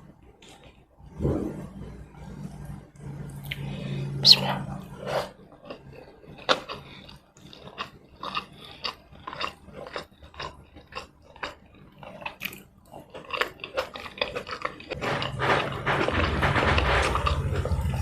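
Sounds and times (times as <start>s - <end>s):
chewing and mouth clicks: 5.2s - 15.0s.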